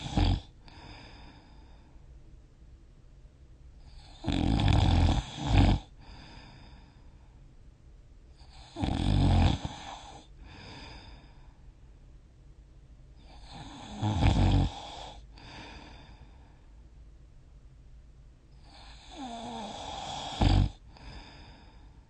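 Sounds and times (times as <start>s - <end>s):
person snoring: 0.0s - 1.6s, 3.8s - 6.8s, 8.4s - 11.4s, 13.2s - 16.3s, 18.6s - 21.9s
soft breath out: 0.6s - 2.1s, 6.0s - 7.5s, 9.9s - 11.7s, 15.0s - 16.9s, 20.9s - 22.0s.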